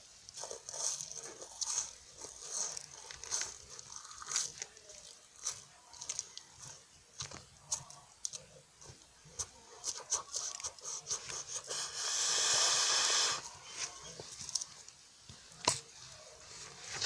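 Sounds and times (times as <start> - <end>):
steady hiss: 0.0 - 5.9, 6.7 - 17.0
pastry crunching being eaten: 0.3 - 9.0.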